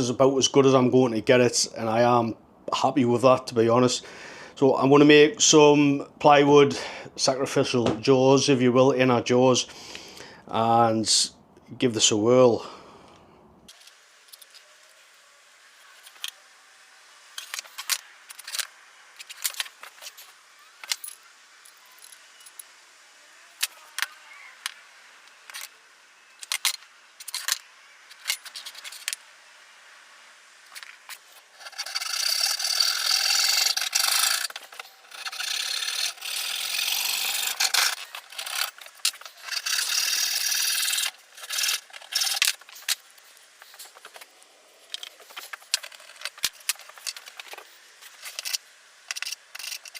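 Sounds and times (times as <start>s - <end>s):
hand saw cutting plywood: 31.4s - 42.8s.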